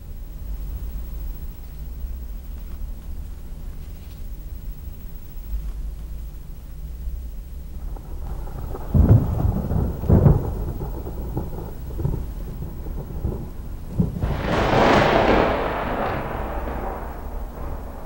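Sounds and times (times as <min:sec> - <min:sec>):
rain hiss: 0:00.0 - 0:18.0
thunder booms and rolls: 0:07.6 - 0:18.0.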